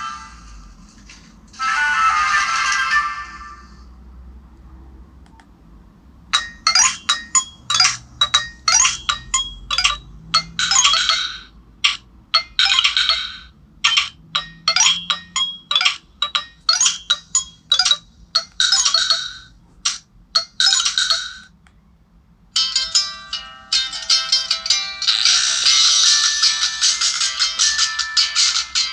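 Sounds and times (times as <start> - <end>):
phone ringtone high notes: 1.6 - 3.5, 6.4 - 19.5, 20.4 - 21.4.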